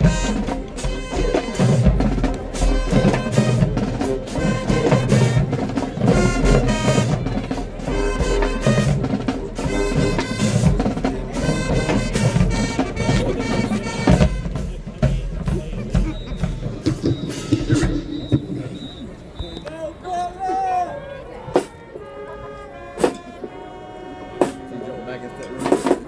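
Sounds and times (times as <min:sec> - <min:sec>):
brass horns: 0:00.0 - 0:19.6, 0:20.9 - 0:26.0
drumline beat: 0:00.0 - 0:20.0, 0:25.5 - 0:26.0
marching band playing: 0:00.0 - 0:26.0.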